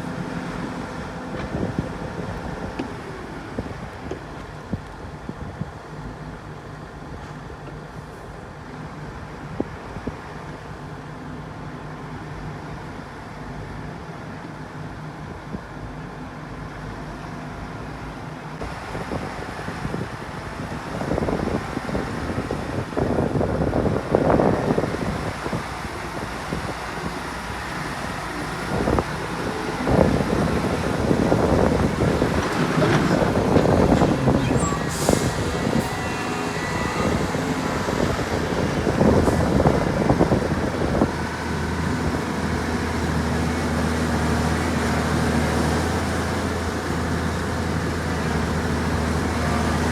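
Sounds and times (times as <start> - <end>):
diesel earthmoving machinery running: 0.0 - 49.9
wind buffeting microphone: 0.1 - 5.9, 18.6 - 46.6.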